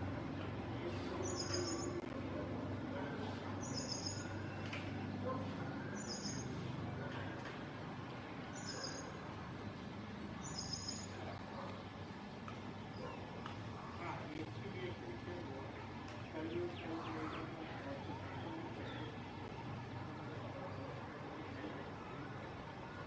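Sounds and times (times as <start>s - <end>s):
bird chirping: 1.2s - 2.1s, 3.6s - 6.9s, 8.5s - 13.6s.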